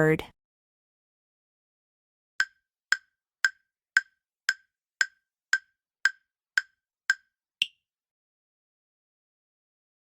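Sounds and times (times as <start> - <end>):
countdown timer clock ticks: 2.4 - 7.8.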